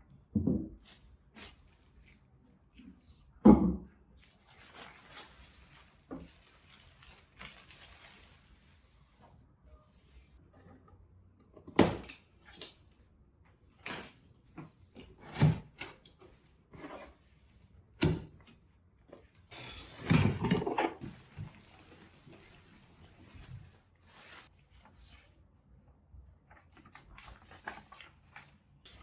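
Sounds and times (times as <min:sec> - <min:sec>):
objects knocking and clattering: 0:20.0 - 0:23.7.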